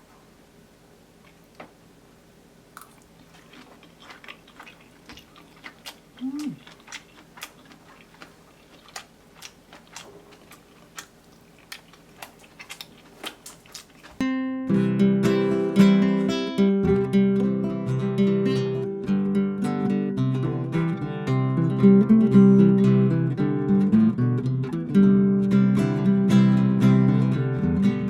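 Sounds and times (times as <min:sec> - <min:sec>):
person chewing food: 0:02.8 - 0:16.4
person humming: 0:06.2 - 0:06.7, 0:14.7 - 0:17.1.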